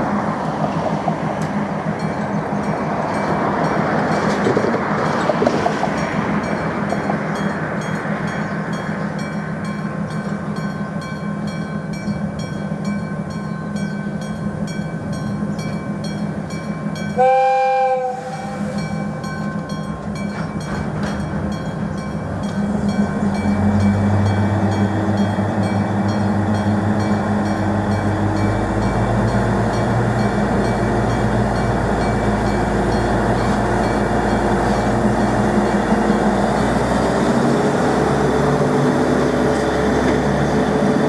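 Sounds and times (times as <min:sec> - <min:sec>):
diesel locomotive idling: 0:00.0 - 0:41.0
locomotive horn blast: 0:17.1 - 0:19.4.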